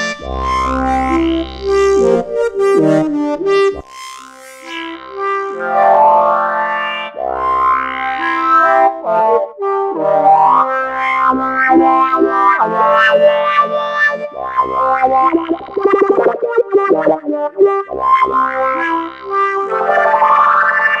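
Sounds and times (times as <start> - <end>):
fast wobbling synth pulse: 11.7 - 12.9, 15.1 - 17.8
synthesizer loop: 11.7 - 13.0, 15.0 - 17.9.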